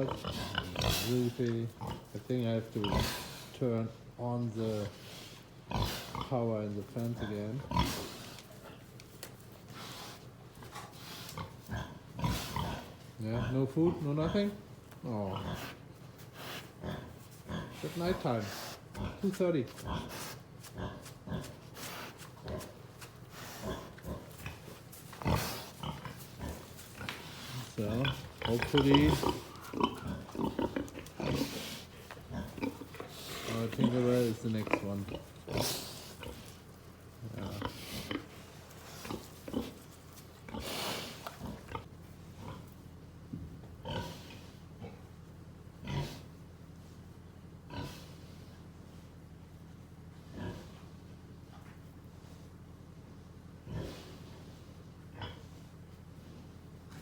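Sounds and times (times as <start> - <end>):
pigs grunting: 0.0 - 3.6, 4.5 - 8.9, 9.7 - 42.8, 43.8 - 45.1, 45.8 - 46.3, 47.7 - 48.4, 50.2 - 50.9, 53.6 - 54.5, 55.1 - 55.6.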